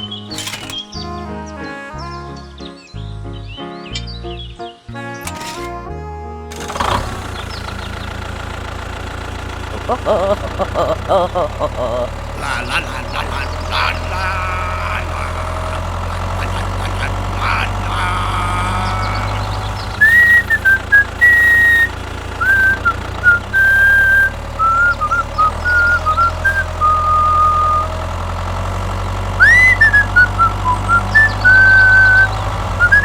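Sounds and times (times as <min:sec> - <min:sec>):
low machine hum: 0:08.9 - 0:28.1
person whistling a tune: 0:20.0 - 0:28.0, 0:29.4 - 0:33.0.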